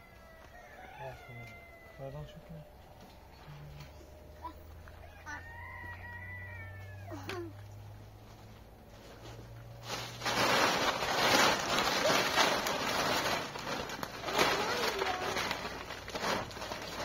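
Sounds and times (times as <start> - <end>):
rooster crowing: 0.0 - 2.6, 4.8 - 7.4
loud rough rustling and crackling: 8.2 - 17.0.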